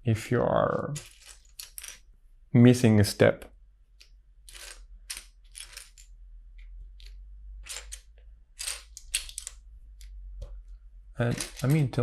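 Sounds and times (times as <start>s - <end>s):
plastic bricks clicking and rattling: 4.5s - 10.2s, 11.2s - 12.0s.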